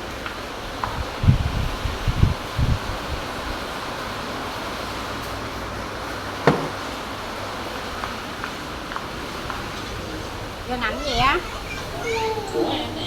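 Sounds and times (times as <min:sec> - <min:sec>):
sharp knock: 0:06.5 - 0:06.9.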